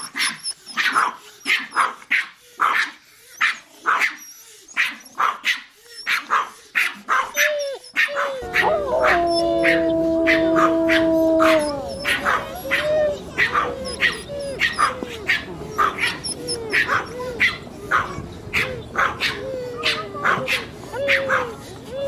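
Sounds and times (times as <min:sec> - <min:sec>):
small dog yapping: 0:04.8 - 0:21.5.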